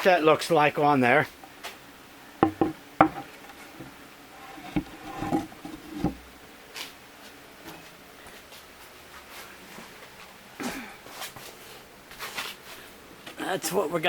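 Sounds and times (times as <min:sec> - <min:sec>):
wooden pieces knocking: 0:02.4 - 0:03.3.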